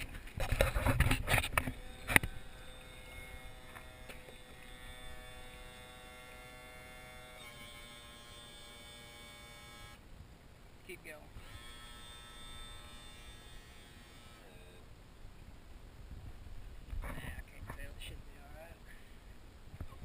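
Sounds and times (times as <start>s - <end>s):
electric pump whining: 0.0s - 10.0s, 11.4s - 14.8s.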